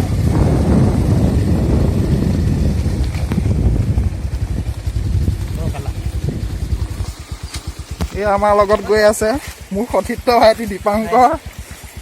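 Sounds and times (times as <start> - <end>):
vehicle engine running: 0.0 - 12.0
wind buffeting microphone: 0.0 - 12.0.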